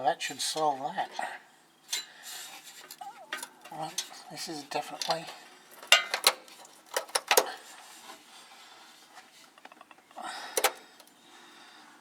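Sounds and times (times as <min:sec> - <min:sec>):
sharp clicks and light knocks: 0:04.9 - 0:07.6, 0:09.4 - 0:11.2.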